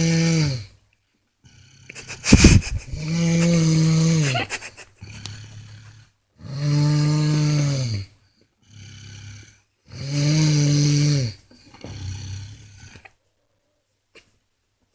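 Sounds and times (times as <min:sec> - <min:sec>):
soft breath: 0:01.9 - 0:03.6
man snoring loudly: 0:02.0 - 0:04.4, 0:06.4 - 0:08.1, 0:08.7 - 0:12.9.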